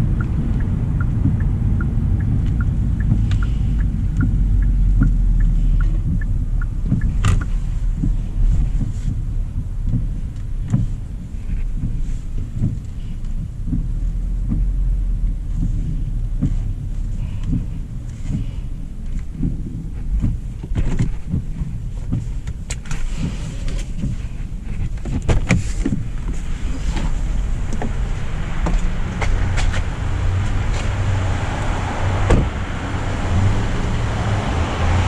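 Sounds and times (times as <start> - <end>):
car low rumble: 0.0 - 35.0.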